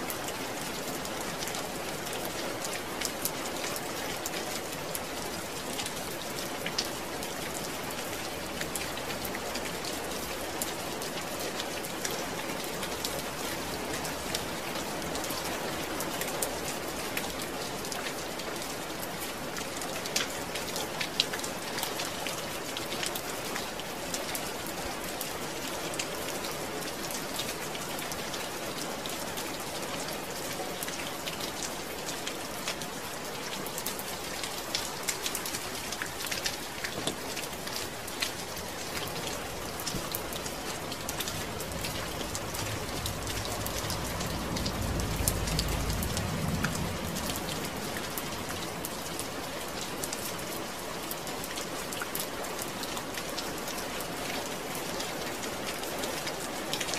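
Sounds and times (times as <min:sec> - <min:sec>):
rain drops pattering: 0:00.0 - 0:56.9
deep low rumble: 0:41.4 - 0:47.8.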